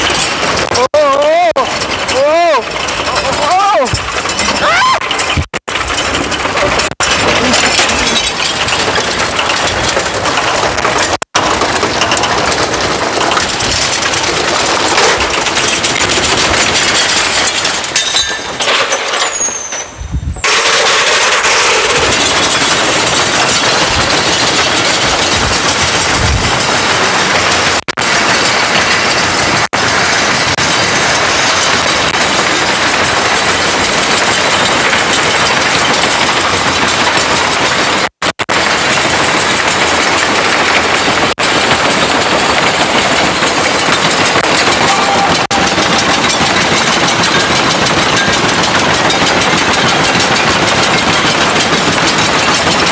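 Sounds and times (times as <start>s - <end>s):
washing machine rattling and banging: 0.0s - 52.9s.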